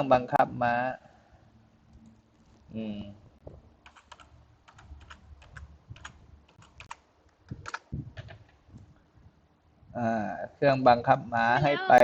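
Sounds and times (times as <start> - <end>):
typing on computer keyboard: 3.8 - 8.6.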